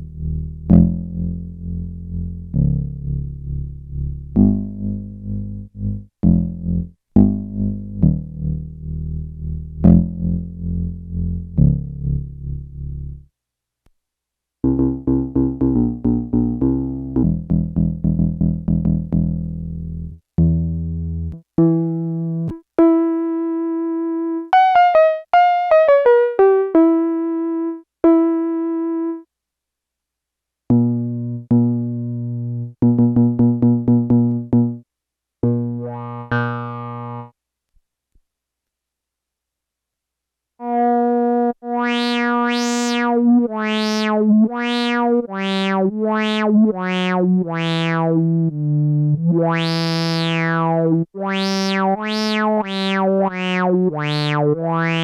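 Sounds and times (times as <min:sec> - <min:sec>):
buzzy synthesizer run: 0:35.4 - 0:37.3, 0:40.6 - 0:55.0
analog synthesizer notes: 0:35.4 - 0:37.4, 0:40.6 - 0:55.0.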